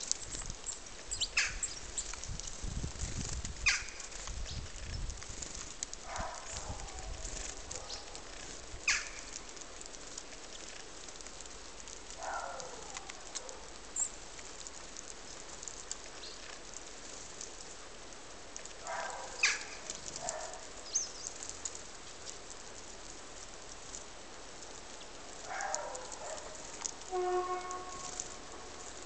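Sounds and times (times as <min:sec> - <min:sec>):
harsh bird calls: 0:01.1 - 0:01.9, 0:03.6 - 0:04.1, 0:08.8 - 0:09.3, 0:19.3 - 0:19.8
high bird chirps: 0:01.1 - 0:02.1.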